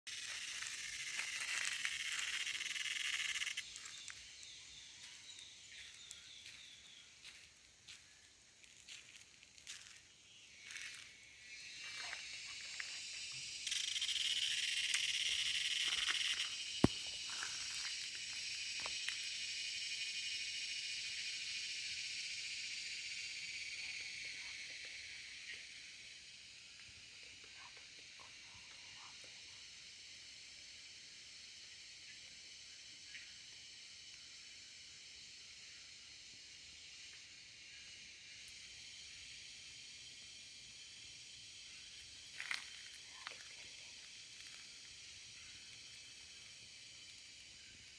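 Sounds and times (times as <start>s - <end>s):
cicada buzzing: 0.1s - 7.4s, 9.7s - 28.2s.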